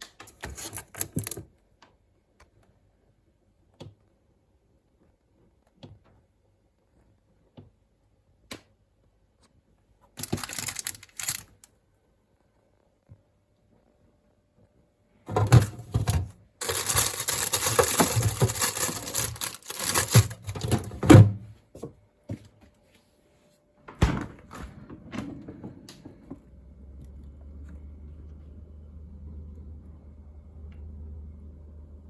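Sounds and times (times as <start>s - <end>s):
packaging rustling and crinkling: 0.2s - 1.4s, 10.2s - 11.7s, 15.3s - 21.1s
faint low hum: 9.8s - 32.0s.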